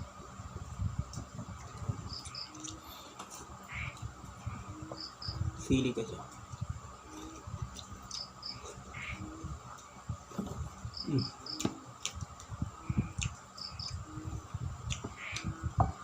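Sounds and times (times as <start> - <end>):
crickets chirring: 1.5 - 16.0
person chewing food: 13.1 - 13.4, 14.8 - 15.1.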